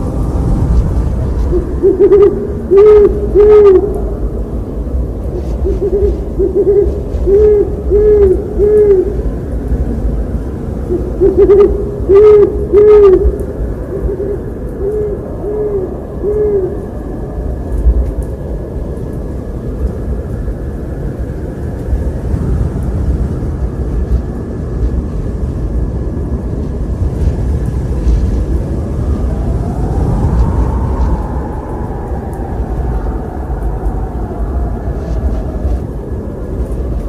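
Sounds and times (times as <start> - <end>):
high moaning wind tone: 0.0 - 37.0
low wind noise: 0.0 - 37.0
owl hooting: 1.5 - 4.0, 5.4 - 9.2, 10.9 - 16.8.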